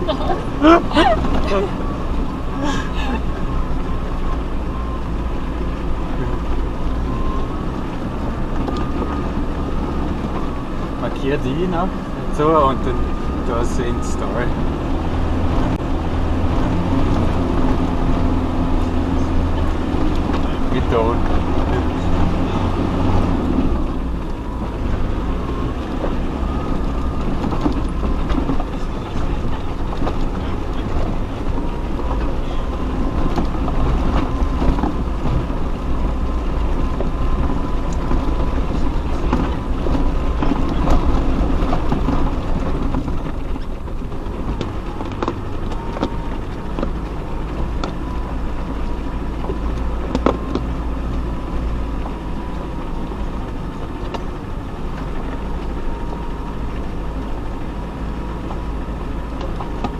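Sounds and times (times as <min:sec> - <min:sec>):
off-road vehicle engine running low: 0:00.0 - 0:59.9.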